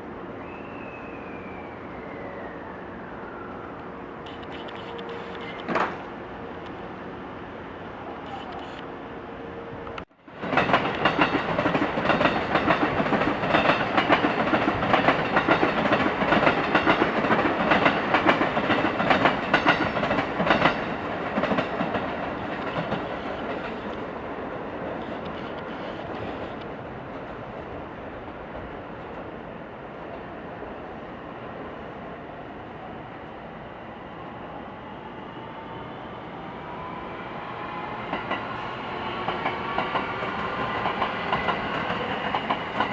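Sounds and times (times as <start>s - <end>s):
train rumble: 9.8s - 31.6s, 37.6s - 42.9s
train wheels clattering: 10.4s - 24.0s.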